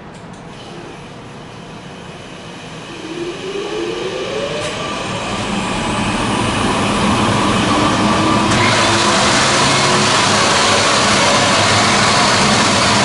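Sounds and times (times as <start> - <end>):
steady hum: 1.1 - 13.0
planer motor whining: 3.0 - 13.0.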